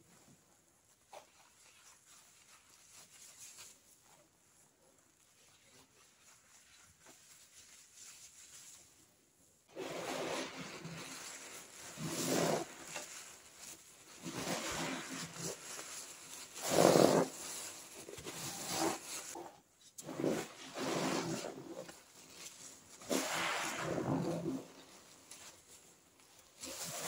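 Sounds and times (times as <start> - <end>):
wet sponge squelching: 0.9 - 27.0.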